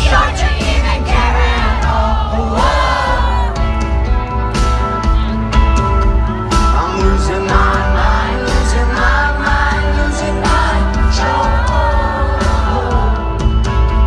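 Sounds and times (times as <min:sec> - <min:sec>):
lead singer singing: 0:00.0 - 0:03.9, 0:05.0 - 0:14.0
heavy bass: 0:00.0 - 0:14.0
live rock band playing: 0:00.0 - 0:14.0.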